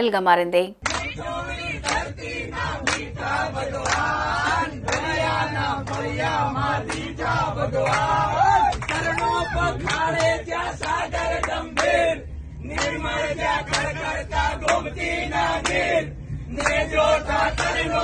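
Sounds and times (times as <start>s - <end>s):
people clapping in time: 0.8s - 1.2s, 1.8s - 7.2s, 7.8s - 12.1s, 12.7s - 14.0s, 14.6s - 14.9s, 15.6s - 15.9s, 16.5s - 18.0s
group singing in chorus: 0.8s - 18.0s.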